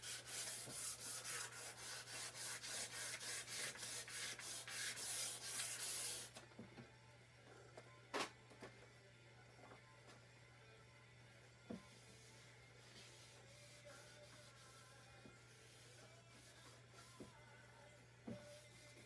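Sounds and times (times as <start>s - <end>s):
sandpaper rubbing on steel: 0.0s - 6.3s.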